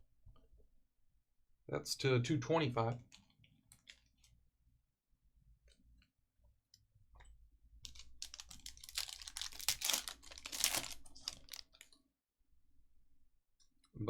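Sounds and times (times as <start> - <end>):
foil pack crinkling: 7.9 - 12.0.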